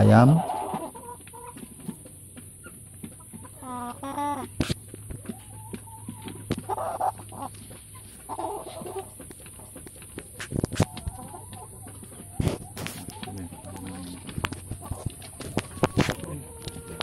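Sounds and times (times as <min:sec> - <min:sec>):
chickens clucking: 0:00.0 - 0:17.0.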